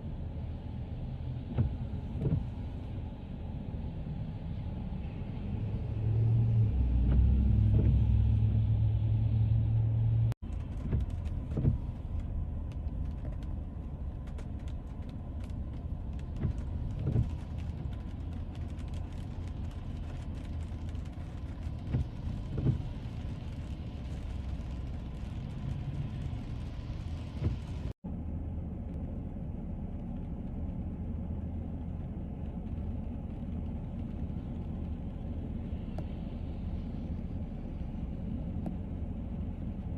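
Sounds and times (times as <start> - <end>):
car driving on wet road: 0.0 - 39.9.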